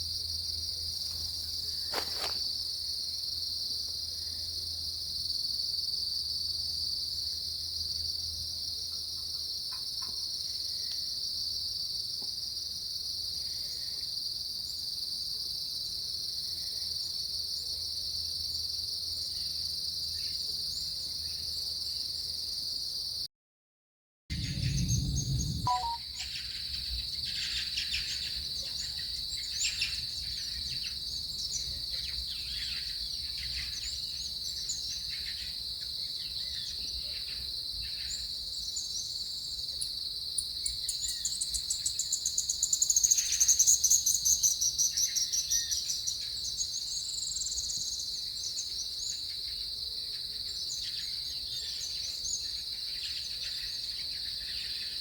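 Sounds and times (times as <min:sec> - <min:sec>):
rapid high insect trill: 0:00.0 - 0:04.0, 0:40.3 - 0:49.6
insect chorus shrilling: 0:01.0 - 0:02.6, 0:25.7 - 0:26.0.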